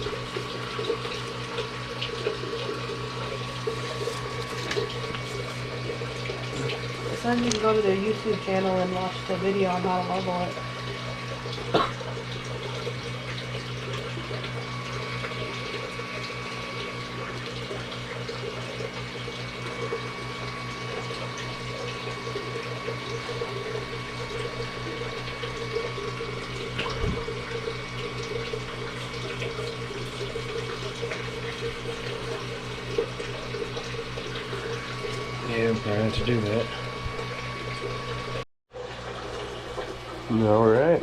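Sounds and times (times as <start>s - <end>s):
cooling fans whirring: 0.0s - 41.0s.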